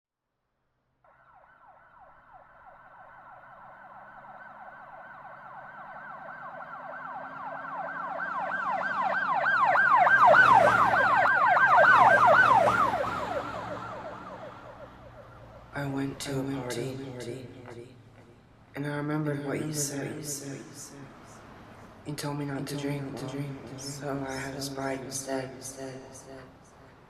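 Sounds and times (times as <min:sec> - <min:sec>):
emergency siren yelping: 0:01.1 - 0:15.8
low vehicle rumble: 0:02.6 - 0:27.0.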